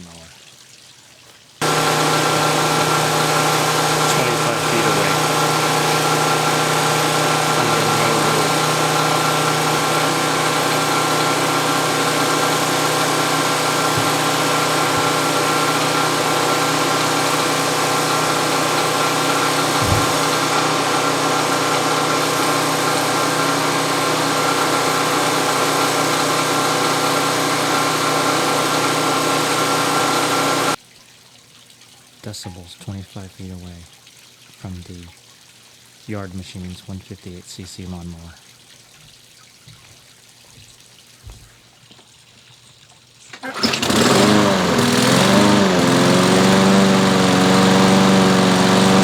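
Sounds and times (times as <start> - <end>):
small gas engine running: 1.6 - 30.8, 43.4 - 49.0.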